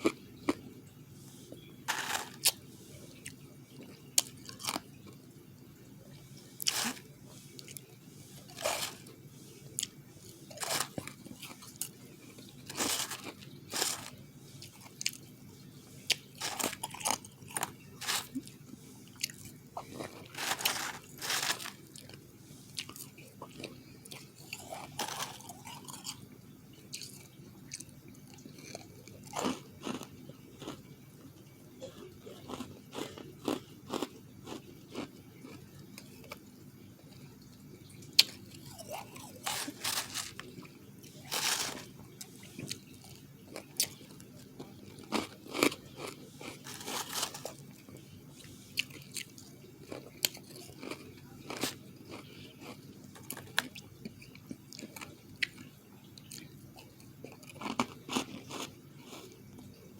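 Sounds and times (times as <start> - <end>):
soft chewing: 0.0 - 59.9
crunching ice: 1.9 - 2.6, 6.6 - 7.1, 8.5 - 9.1, 10.5 - 11.6, 12.6 - 14.2, 16.1 - 18.6, 19.8 - 22.2, 24.5 - 26.2, 38.6 - 42.0, 44.9 - 48.0, 49.9 - 53.5.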